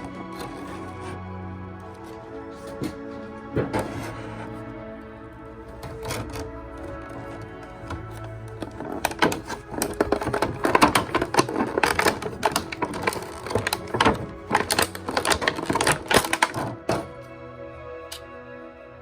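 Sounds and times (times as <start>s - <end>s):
soft background music: 0.0s - 19.0s
plastic toy clicking and rattling: 5.7s - 17.2s.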